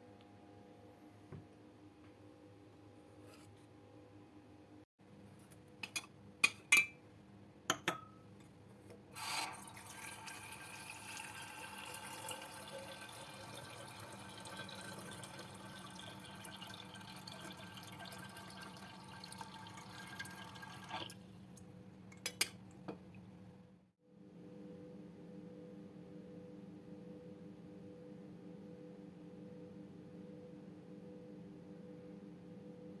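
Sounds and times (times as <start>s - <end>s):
water running into vessel: 9.2s - 21.3s.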